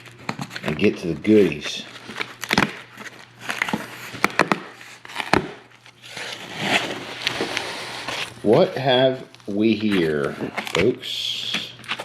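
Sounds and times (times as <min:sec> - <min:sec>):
cardboard being torn open: 0:01.4 - 0:08.4
cardboard snapping: 0:02.0 - 0:08.2.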